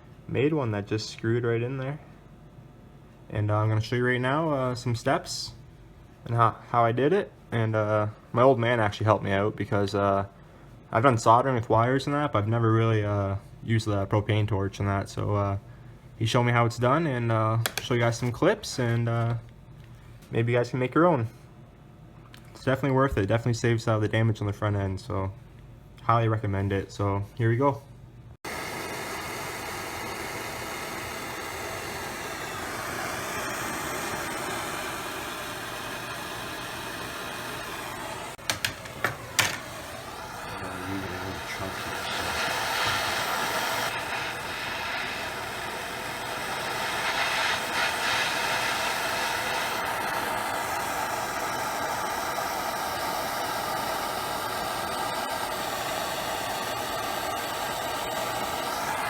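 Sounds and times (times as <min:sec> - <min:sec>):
torch flame hissing: 0:28.4 - 0:59.0.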